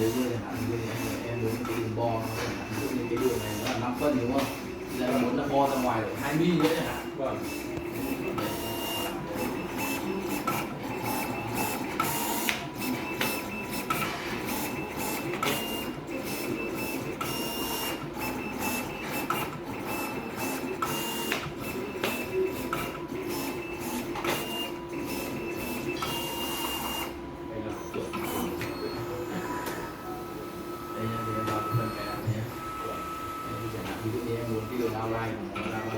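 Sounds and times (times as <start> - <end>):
cutting plotter motors whirring: 0.0 - 35.9
plotter sharp clicks: 7.6 - 14.0.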